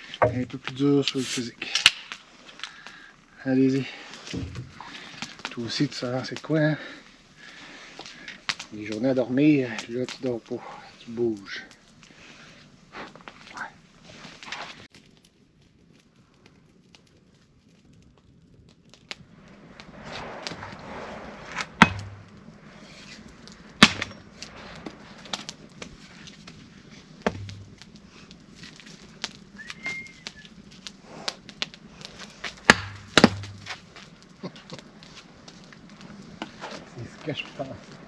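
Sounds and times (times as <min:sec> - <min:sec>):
rustling: 0:00.0 - 0:38.0
axe chopping firewood: 0:00.2 - 0:00.5, 0:21.7 - 0:23.1, 0:23.8 - 0:24.9, 0:27.2 - 0:27.9, 0:32.5 - 0:34.0.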